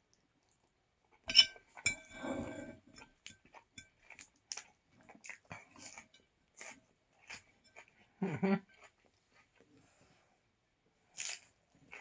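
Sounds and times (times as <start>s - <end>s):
tableware clinking: 1.3s - 3.1s.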